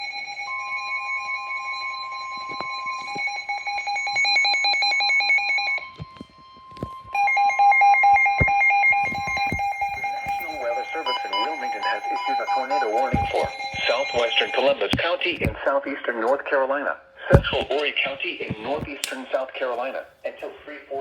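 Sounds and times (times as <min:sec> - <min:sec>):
shrill electronic beeping alarm: 0:00.0 - 0:15.1
steady warning tone: 0:00.0 - 0:15.6.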